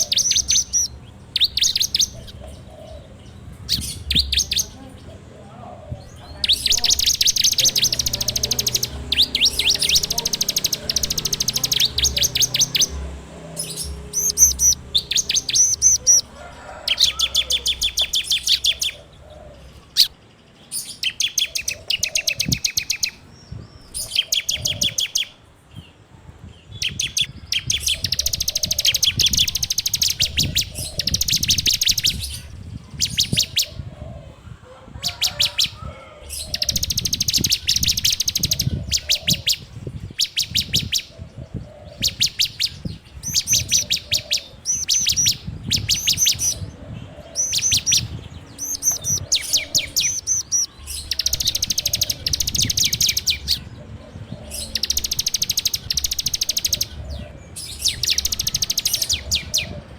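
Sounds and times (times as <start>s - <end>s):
bird rattling song: 0.0s - 4.8s, 6.4s - 19.1s, 19.9s - 25.4s, 26.8s - 33.8s, 35.1s - 53.8s, 54.5s - 59.7s.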